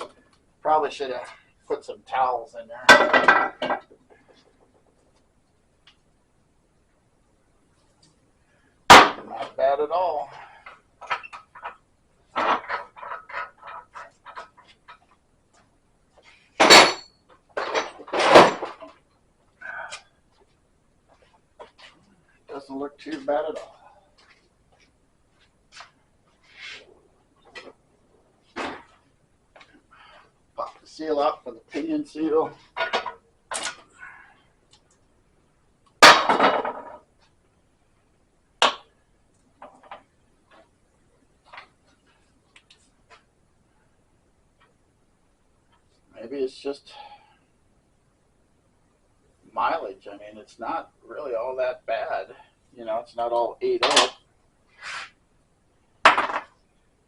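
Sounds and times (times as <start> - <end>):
metal tools knocking and prying: 2.9 - 4.8, 12.4 - 15.1, 16.6 - 18.9, 32.8 - 33.8
metal clatter: 11.0 - 15.1
metal clang ringing: 16.6 - 18.6.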